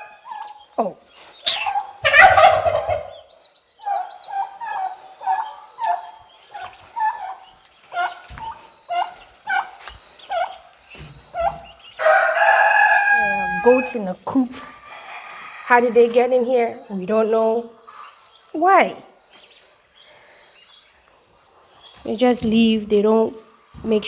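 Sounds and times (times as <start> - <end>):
chick peeps: 0.0 - 17.2
turkeys calling: 0.0 - 24.0.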